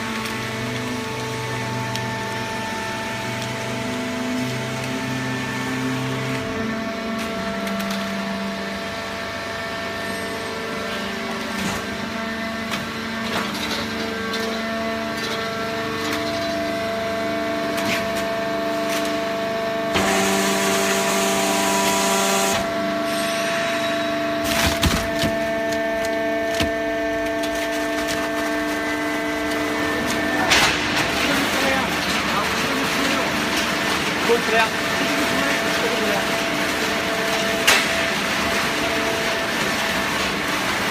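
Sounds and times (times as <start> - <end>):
hydraulic press motor hum: 0.0 - 34.2
paper creaking and clicking: 24.4 - 33.7.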